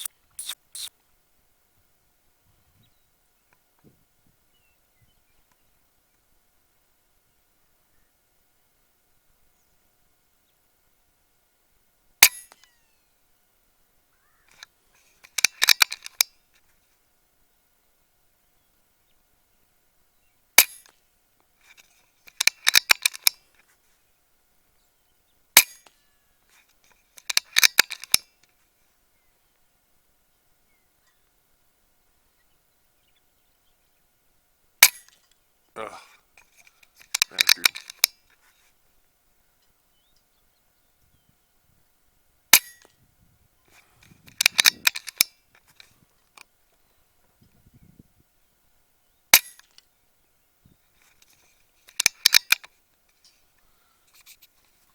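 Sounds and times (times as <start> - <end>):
sharp clicks: 0.0 - 0.9, 36.4 - 38.2, 44.0 - 45.9, 51.2 - 52.7
metallic clicks of rifle handling: 14.5 - 16.7, 21.6 - 23.7, 25.6 - 28.6, 34.8 - 35.4, 36.4 - 38.6, 42.5 - 42.9, 43.7 - 46.5, 49.3 - 49.9, 51.0 - 54.7.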